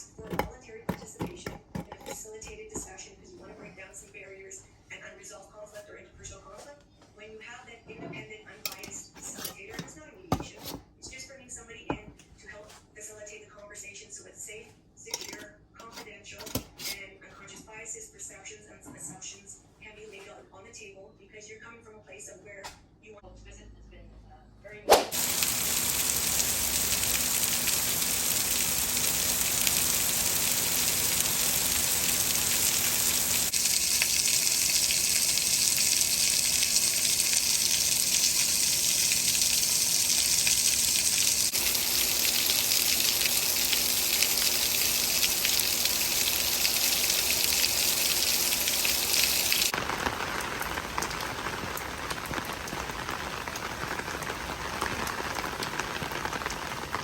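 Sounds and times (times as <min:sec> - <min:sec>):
rain pattering: 0:25.2 - 0:57.0.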